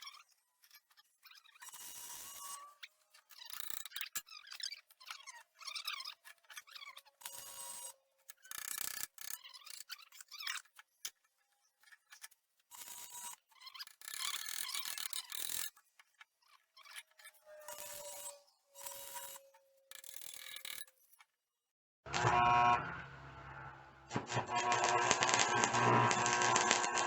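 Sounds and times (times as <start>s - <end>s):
welding arc crackling: 22.1s - 27.0s.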